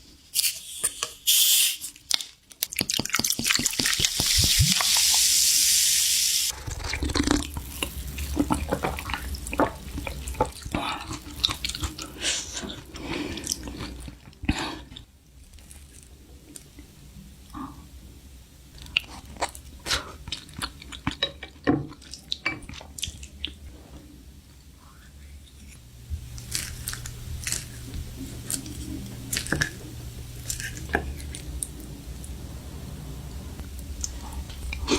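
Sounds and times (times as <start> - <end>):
liquid pouring: 2.8 - 6.6.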